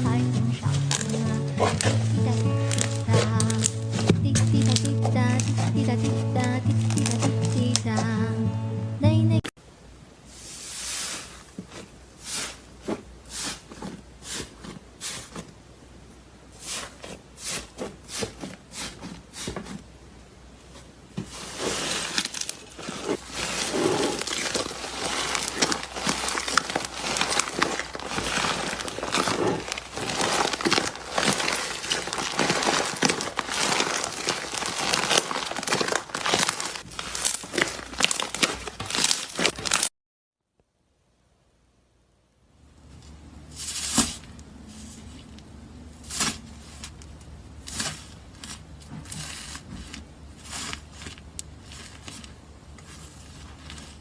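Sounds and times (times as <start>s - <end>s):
slime squeezed and crackling: 21.8s - 39.9s.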